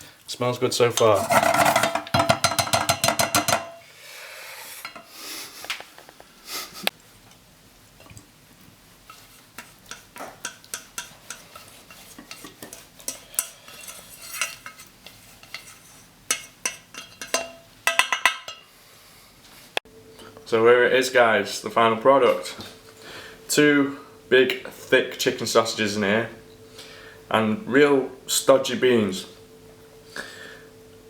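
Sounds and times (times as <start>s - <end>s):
utensil scraping a pan: 0.9s - 3.9s, 9.0s - 18.6s
clinks against a pan: 1.0s - 3.8s, 9.9s - 14.8s, 16.3s - 18.7s.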